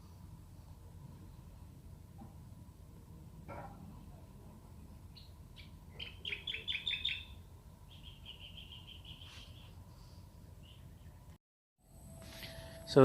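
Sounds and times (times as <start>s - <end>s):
small bird chirping and trilling: 5.2s - 9.8s.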